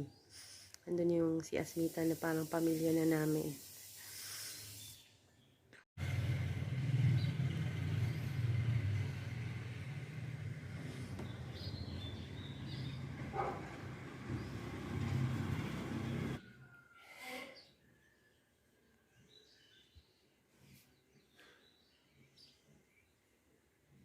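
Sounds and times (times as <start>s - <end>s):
motor vehicle rumbling: 6.0s - 16.4s
traffic noise: 6.0s - 16.5s.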